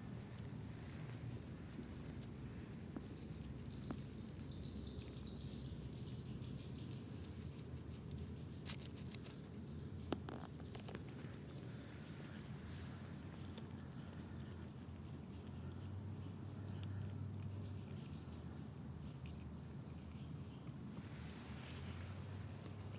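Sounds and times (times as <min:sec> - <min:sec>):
squirrel scrabbling in leaf litter: 0:07.1 - 0:09.6, 0:20.9 - 0:22.9.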